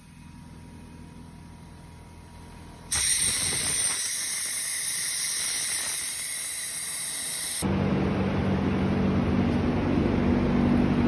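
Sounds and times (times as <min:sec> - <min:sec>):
pressurised spray hissing: 0:02.9 - 0:07.6.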